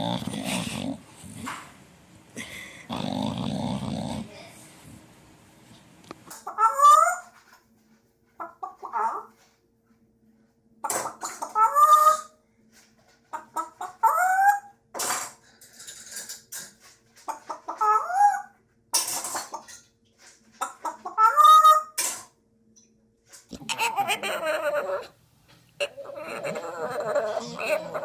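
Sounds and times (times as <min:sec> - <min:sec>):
animal crying: 0:23.5 - 0:25.2, 0:25.8 - 0:28.0.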